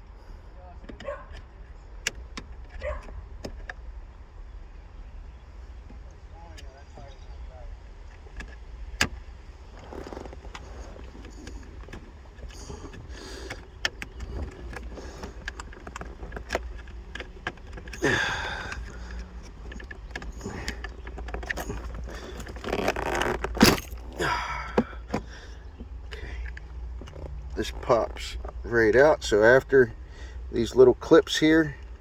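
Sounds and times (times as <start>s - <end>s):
rustle of handling: 7.8s - 28.7s
plastic clips clicking and scraping: 9.8s - 24.2s.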